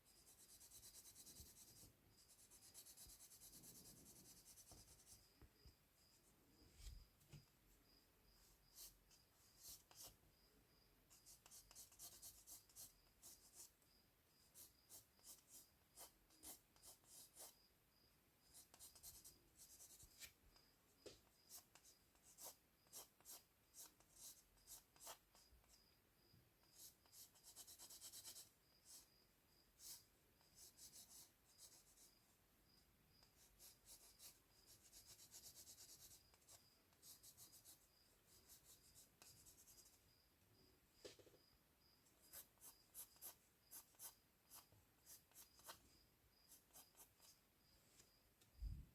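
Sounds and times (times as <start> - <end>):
pencil scratching on paper: 0.0 - 5.3, 8.5 - 10.2, 11.1 - 13.8, 14.5 - 17.6, 18.5 - 20.3, 21.5 - 25.8, 26.6 - 29.1, 29.8 - 32.2, 33.2 - 40.0, 42.2 - 45.9, 46.5 - 47.4.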